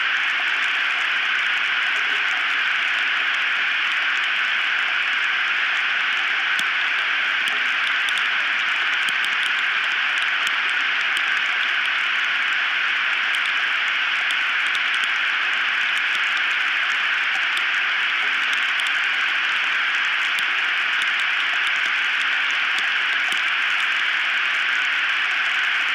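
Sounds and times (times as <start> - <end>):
static hiss: 0.0 - 25.9
faint clicks: 6.1 - 25.9.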